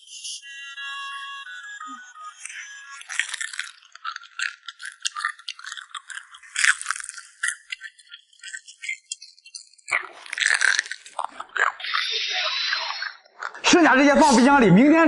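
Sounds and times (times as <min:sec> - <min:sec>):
crunching crisp food: 0:01.8 - 0:12.1.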